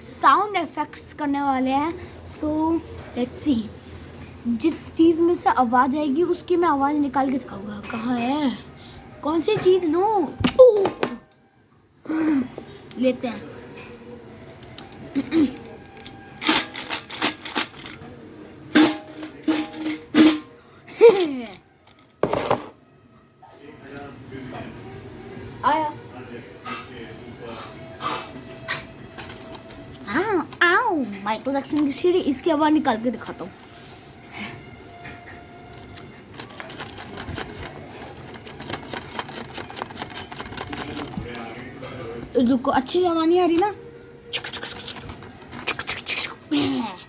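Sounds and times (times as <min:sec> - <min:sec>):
scraping rustle: 0:36.3 - 0:41.3
small object clicking and rattling: 0:36.4 - 0:41.4.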